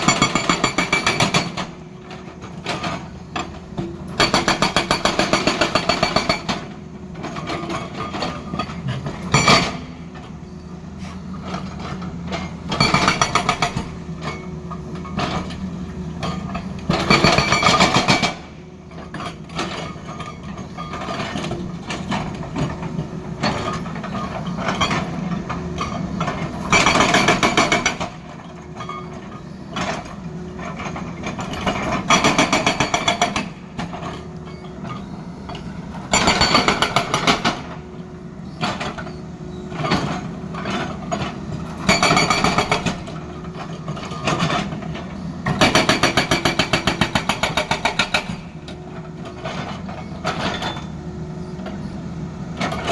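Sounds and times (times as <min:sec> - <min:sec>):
hydraulic rock breaker hammering: 0:00.0 - 0:10.1, 0:11.7 - 0:15.6, 0:16.2 - 0:34.2, 0:35.5 - 0:37.8, 0:39.8 - 0:50.9.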